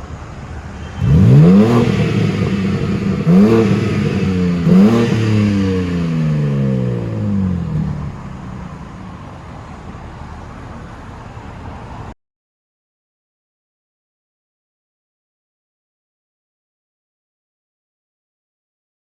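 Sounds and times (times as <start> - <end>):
car engine revving: 1.0 - 9.4.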